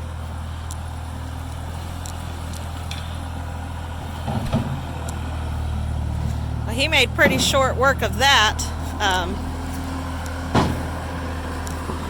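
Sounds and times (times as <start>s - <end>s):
loader engine running: 0.0s - 12.0s.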